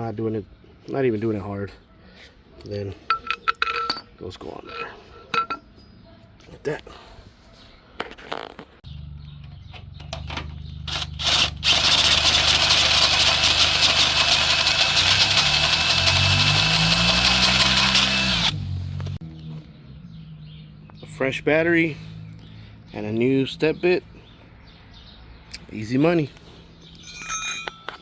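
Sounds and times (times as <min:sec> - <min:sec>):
cordless drill motor humming: 0:10.9 - 0:18.6
step bit cutting steel: 0:10.9 - 0:18.6.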